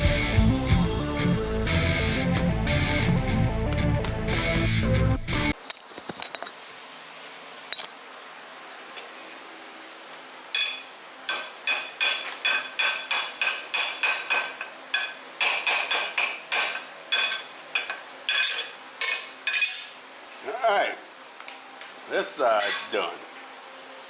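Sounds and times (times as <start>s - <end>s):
hammer striking steel anvil: 10.6s - 20.0s.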